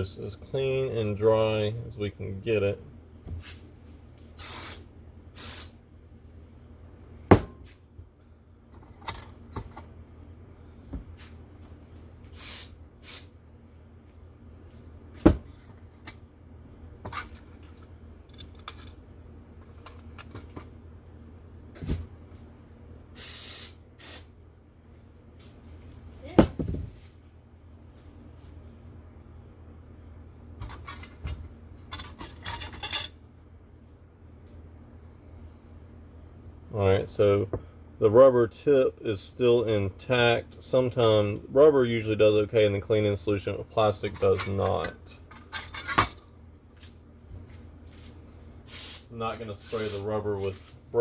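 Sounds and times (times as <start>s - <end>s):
compressed air hissing: 4.4s - 5.8s, 12.4s - 13.3s, 23.2s - 24.3s, 48.7s - 50.0s.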